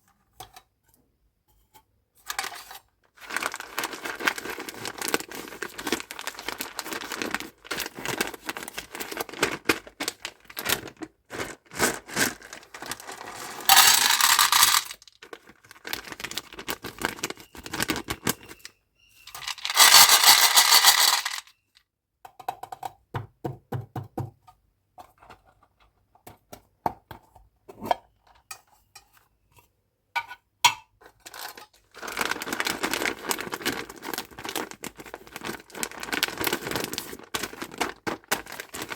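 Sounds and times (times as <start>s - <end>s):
hard candies clattering: 3.2s - 18.6s, 19.3s - 21.5s, 31.3s - 38.9s
plastic wrappers crinkling and tearing: 3.2s - 18.7s, 19.4s - 21.4s, 31.3s - 38.9s.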